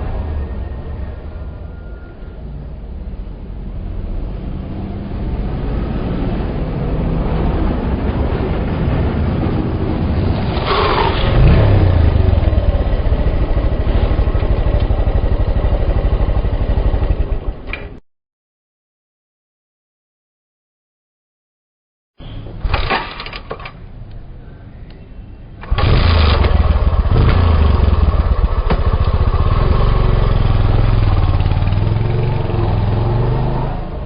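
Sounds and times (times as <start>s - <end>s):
motorcycle engine running: 9.0s - 17.6s, 25.7s - 34.0s.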